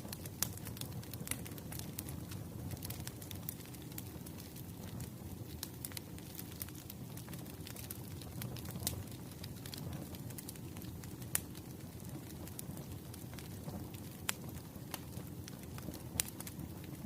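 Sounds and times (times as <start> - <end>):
logs crackling and popping: 0.0 - 17.0
low rumble of flames: 0.0 - 17.0.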